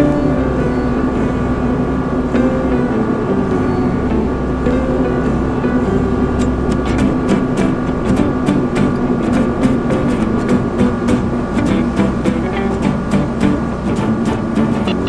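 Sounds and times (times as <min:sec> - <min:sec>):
music with held tones: 0:00.0 - 0:15.0
ticking beat: 0:06.7 - 0:15.0.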